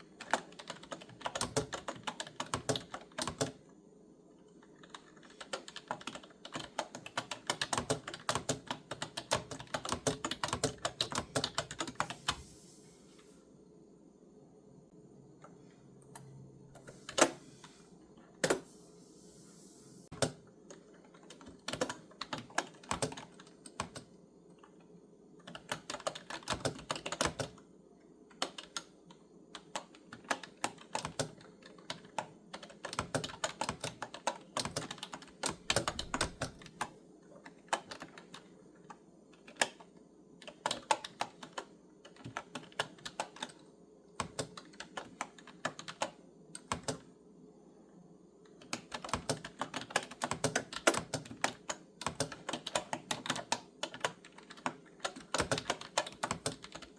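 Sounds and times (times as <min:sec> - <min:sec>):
typing on clicky keyboard: 0:00.0 - 0:03.6, 0:04.6 - 0:12.4, 0:20.1 - 0:24.8, 0:25.4 - 0:27.6, 0:28.3 - 0:47.2, 0:48.5 - 0:56.9.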